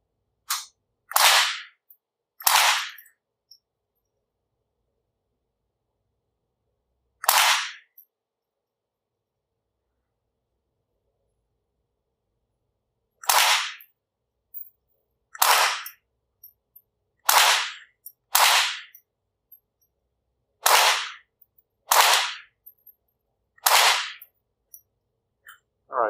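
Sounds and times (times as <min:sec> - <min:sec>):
rifle shots: 0:01.1 - 0:01.6, 0:02.4 - 0:03.0, 0:07.2 - 0:07.8, 0:13.2 - 0:13.8, 0:15.4 - 0:15.9, 0:17.3 - 0:18.9, 0:20.6 - 0:21.2, 0:21.9 - 0:22.4, 0:23.6 - 0:24.2.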